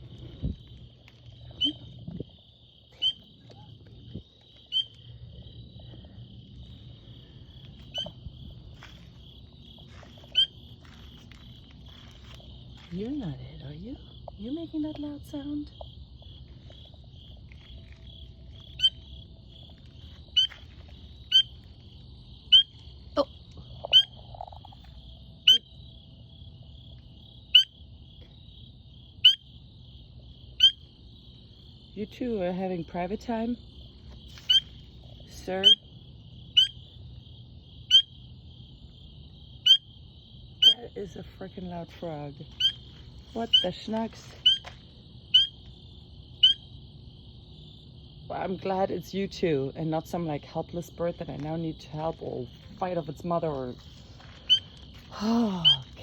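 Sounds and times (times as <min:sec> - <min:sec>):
high-pitched insect chorus: 0:00.0 - 0:56.0
frog peeping: 0:01.4 - 0:02.0, 0:02.9 - 0:03.7, 0:04.6 - 0:05.1, 0:07.8 - 0:08.2, 0:10.3 - 0:10.6, 0:18.7 - 0:19.2, 0:20.3 - 0:20.5, 0:21.3 - 0:21.6, 0:22.4 - 0:24.8, 0:25.4 - 0:25.8, 0:27.5 - 0:27.8, 0:29.2 - 0:29.5, 0:30.6 - 0:30.9, 0:34.4 - 0:34.8, 0:35.4 - 0:35.9, 0:36.5 - 0:37.0, 0:37.8 - 0:38.2, 0:39.6 - 0:39.9, 0:40.6 - 0:40.9, 0:42.5 - 0:44.7, 0:45.3 - 0:45.7, 0:46.4 - 0:46.7, 0:54.4 - 0:54.8, 0:55.6 - 0:56.0
frog calls: 0:01.4 - 0:08.3, 0:10.2 - 0:11.4, 0:18.5 - 0:21.7, 0:22.3 - 0:26.0, 0:27.4 - 0:27.8, 0:29.2 - 0:29.6, 0:30.5 - 0:31.0, 0:34.3 - 0:37.0, 0:37.8 - 0:38.3, 0:39.5 - 0:46.9, 0:54.4 - 0:56.0.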